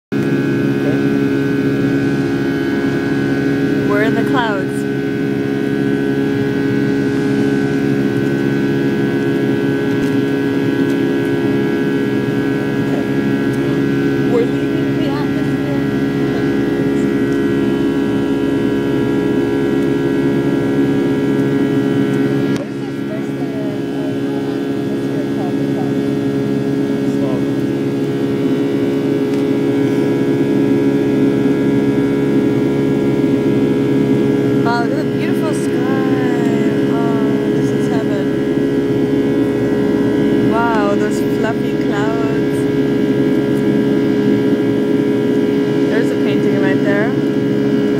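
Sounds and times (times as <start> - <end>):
jet engine cabin drone: 0.1 - 47.9.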